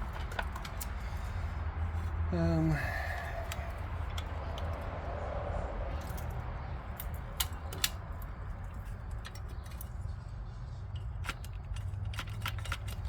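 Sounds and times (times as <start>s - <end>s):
handling sounds: 0.0s - 2.2s, 5.9s - 13.0s.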